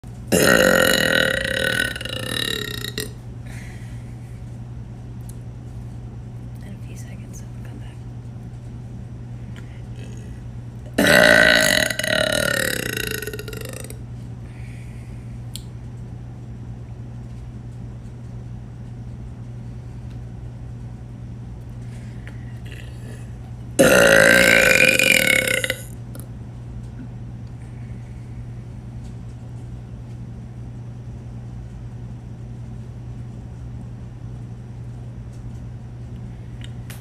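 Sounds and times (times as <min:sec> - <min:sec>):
steady low hum: 0:00.0 - 0:37.0
person burping loudly: 0:00.3 - 0:03.2, 0:10.0 - 0:14.0, 0:22.6 - 0:26.0.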